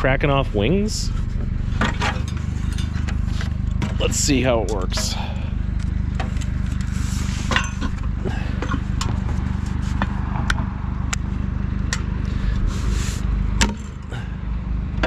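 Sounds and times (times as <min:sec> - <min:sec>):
vehicle engine idling: 0:00.0 - 0:15.0.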